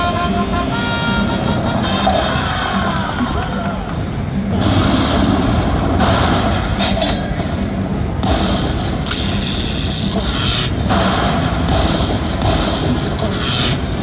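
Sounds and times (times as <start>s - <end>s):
high beep: 6.8s - 7.8s.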